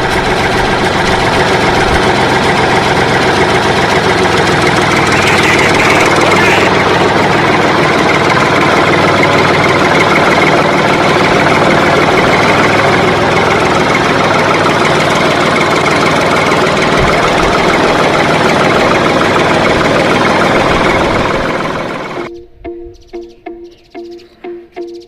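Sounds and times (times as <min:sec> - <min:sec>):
motor running with rattle: 0:00.0 - 0:22.3.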